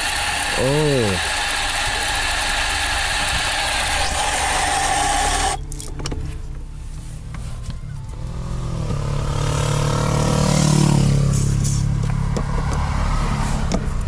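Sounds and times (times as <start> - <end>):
low traffic rumble: 0.0 - 14.0
motorcycle passing by: 8.1 - 14.0.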